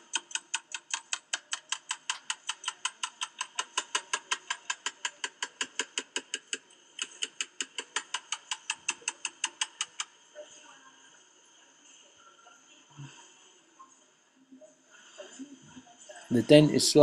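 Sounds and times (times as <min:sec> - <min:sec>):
ratchet clicking: 0:00.0 - 0:10.1.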